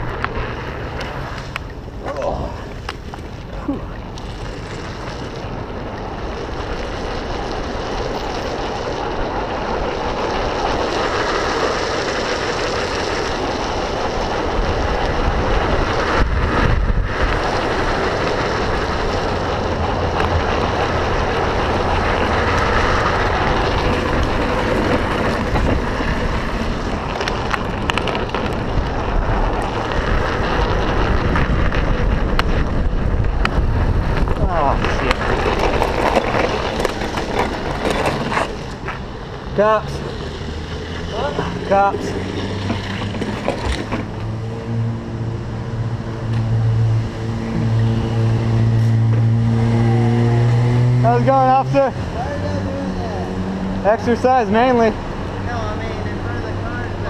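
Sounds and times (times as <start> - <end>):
wheels rolling on asphalt: 0.0 - 57.0
wind on microphone: 12.9 - 39.6.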